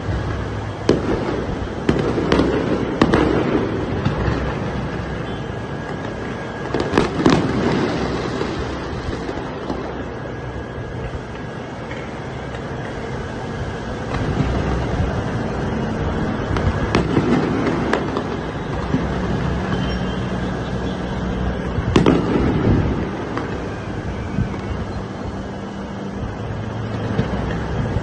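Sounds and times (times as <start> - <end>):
fireworks exploding: 0.0 - 28.0.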